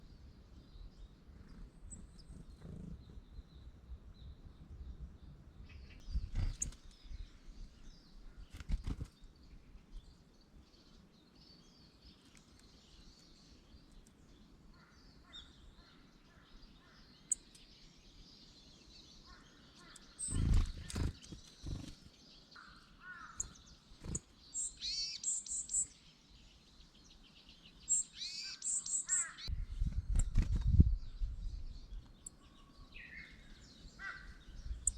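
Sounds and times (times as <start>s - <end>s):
small birds chirping: 0.0s - 34.9s
bird trills: 19.3s - 22.0s, 22.6s - 26.0s, 27.8s - 29.5s.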